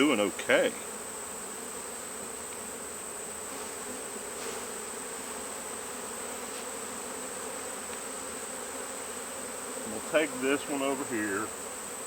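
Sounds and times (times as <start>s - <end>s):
bees buzzing: 0.0s - 12.0s
hive frames clicking: 7.8s - 8.2s.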